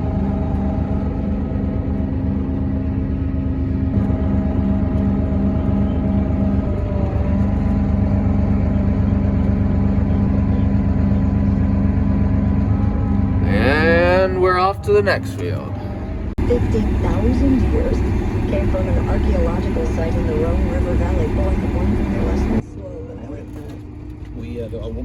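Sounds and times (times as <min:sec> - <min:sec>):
road noise: 0:00.0 - 0:22.6
vehicle engine drone: 0:00.0 - 0:25.0.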